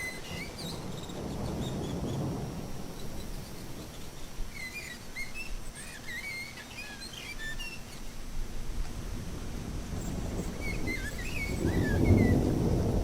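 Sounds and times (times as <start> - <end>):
small birds chirping: 3.0 - 8.2.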